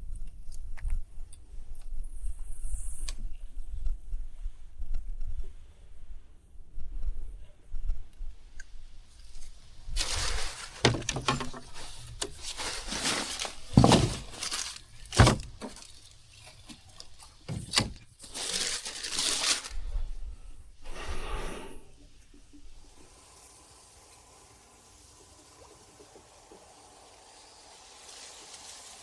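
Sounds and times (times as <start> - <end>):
rustling and crackling: 9.1 - 20.3.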